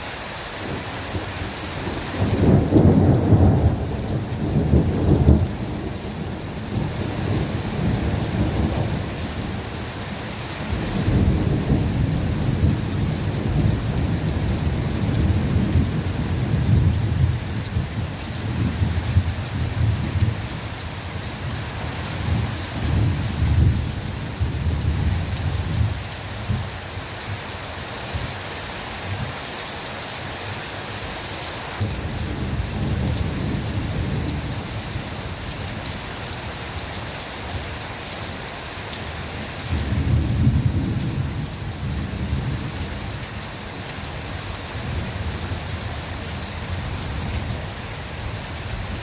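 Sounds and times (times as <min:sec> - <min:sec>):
steady rain: 0:00.0 - 0:49.0
rolling thunder: 0:00.6 - 0:09.7, 0:10.7 - 0:20.5, 0:22.2 - 0:26.6, 0:31.8 - 0:35.9, 0:39.7 - 0:43.1.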